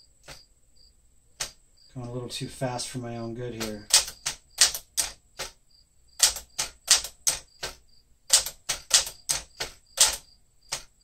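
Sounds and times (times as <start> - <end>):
manual typewriter keystrokes: 3.5 - 5.6, 6.2 - 11.0.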